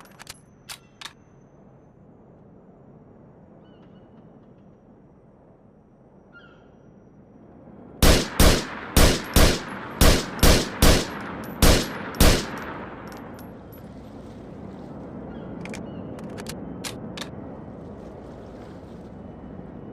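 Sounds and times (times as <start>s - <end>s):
rifle shots echoing: 8.0s - 13.6s.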